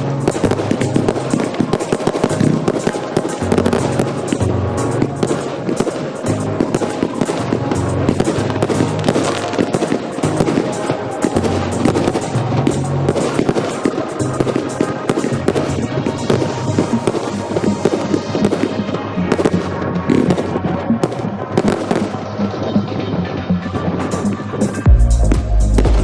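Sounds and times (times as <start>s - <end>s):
fireworks cracking and popping: 0.0s - 22.2s
music with bass line: 0.0s - 26.0s.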